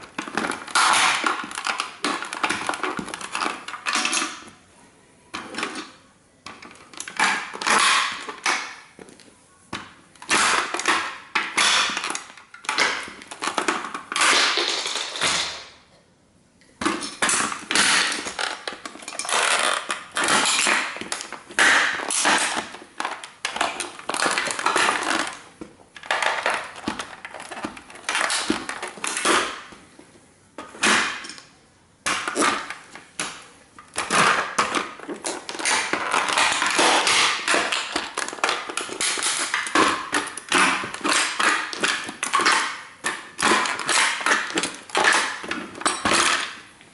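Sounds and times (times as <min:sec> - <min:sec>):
toy car crunching underfoot: 0:17.1 - 0:29.7, 0:32.1 - 0:46.6.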